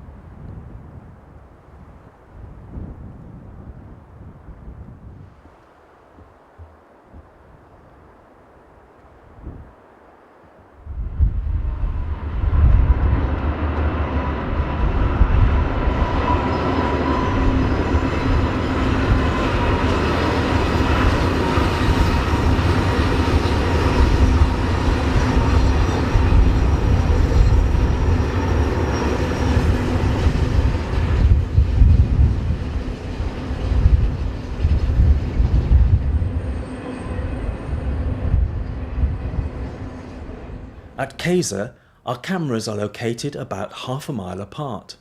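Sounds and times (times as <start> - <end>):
freight train rumbling on track: 11.0 - 41.0.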